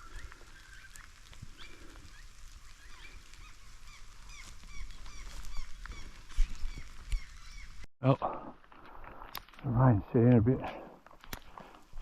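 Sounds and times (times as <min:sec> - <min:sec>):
light rain hissing: 0:00.0 - 0:07.8
birds chirping: 0:00.0 - 0:08.5.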